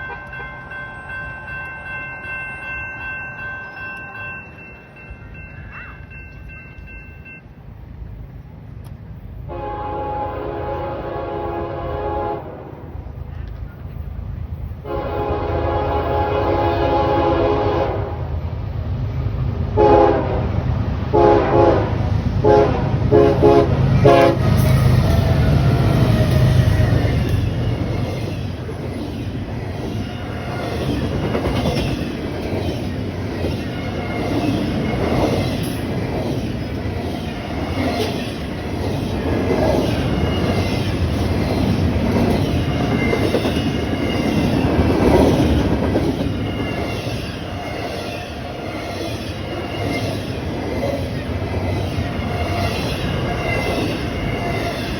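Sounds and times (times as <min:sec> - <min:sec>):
locomotive rumble: 0:08.0 - 0:54.9
train horn blasts: 0:09.5 - 0:13.0, 0:14.8 - 0:18.4, 0:19.7 - 0:27.6
wheels clacking over rail joints: 0:23.3 - 0:54.9.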